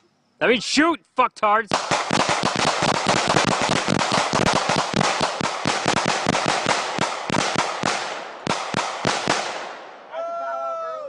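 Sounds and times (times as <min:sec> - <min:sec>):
crackle of sharp bangs: 0:01.7 - 0:10.1.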